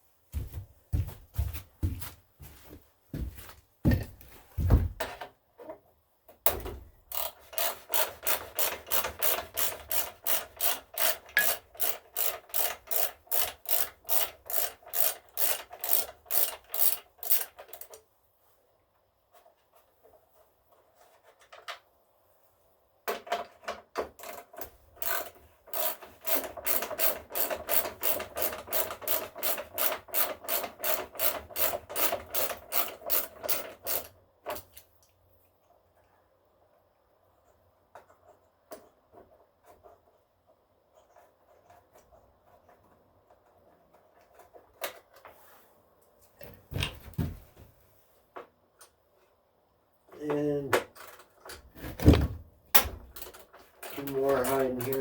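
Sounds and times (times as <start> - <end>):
ratchet wrench clicking: 7.1 - 17.9, 25.0 - 34.1.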